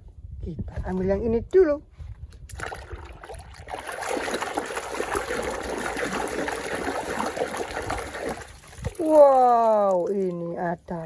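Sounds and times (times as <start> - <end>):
water running and splashing: 2.6 - 10.6.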